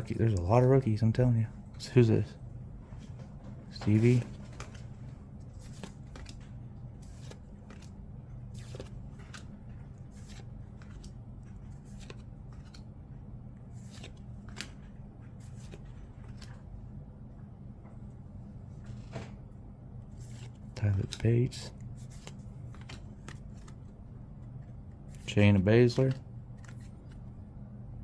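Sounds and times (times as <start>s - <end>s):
low steady hum: 0.0s - 28.0s
cards flipping and sliding: 3.8s - 13.0s, 13.6s - 16.7s, 20.0s - 27.4s.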